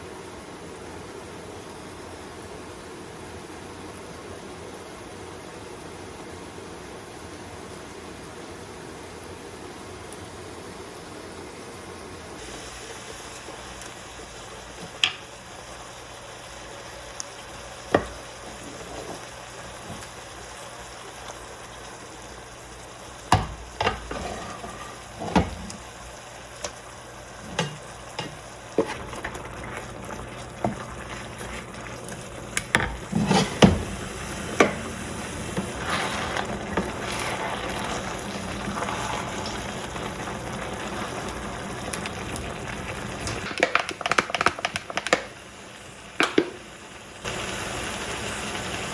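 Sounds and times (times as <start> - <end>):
food sizzling in a pan: 0.0 - 48.9
utensil clinking against pan: 27.5 - 29.0.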